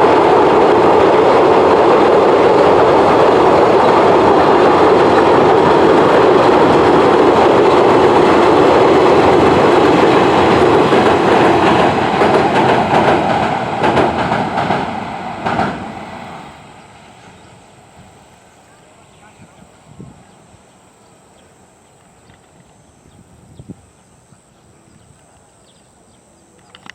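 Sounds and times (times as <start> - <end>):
wheels clacking over rail joints: 0.0 - 16.3
freight train rumbling on bridge: 0.0 - 26.9.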